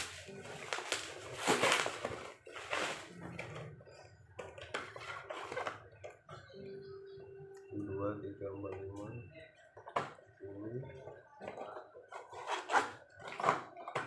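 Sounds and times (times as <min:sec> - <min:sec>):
plastic packaging rustling: 0:00.0 - 0:03.8, 0:04.4 - 0:06.0.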